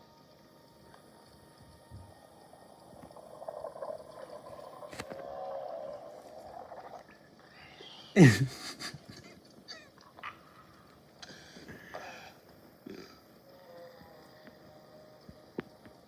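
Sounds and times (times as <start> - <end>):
man belching: 8.1 - 9.2, 12.8 - 13.2.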